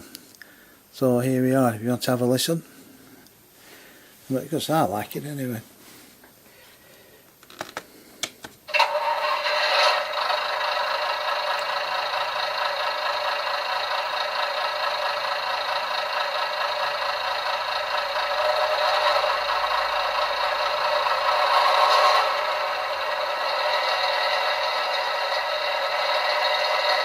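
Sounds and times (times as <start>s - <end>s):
diesel engine sound through small speaker: 8.7s - 27.0s.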